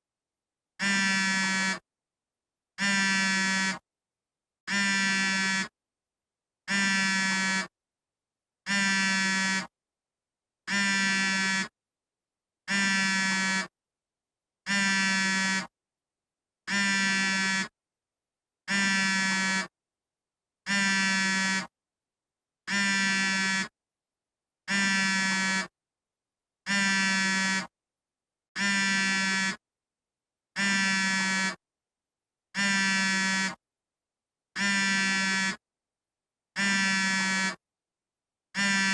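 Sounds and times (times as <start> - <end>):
phone vibrating: 38.6 - 38.9.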